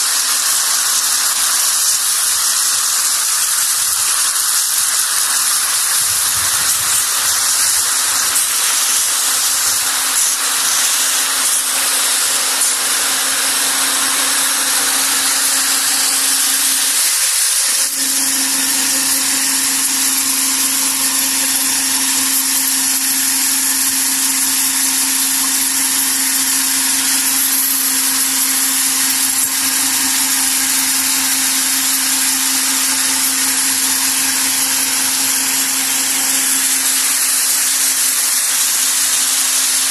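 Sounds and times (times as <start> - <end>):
constant machine hum: 0.0 - 39.9
machine hissing: 0.0 - 39.9.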